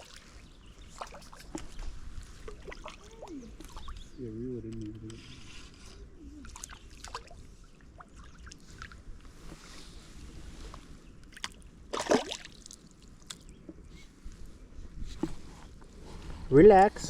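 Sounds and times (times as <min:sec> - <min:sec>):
creek water trickling: 0:00.0 - 0:09.3, 0:11.0 - 0:13.8
small clicks and splashes: 0:00.8 - 0:05.2, 0:06.4 - 0:07.4, 0:11.2 - 0:13.5.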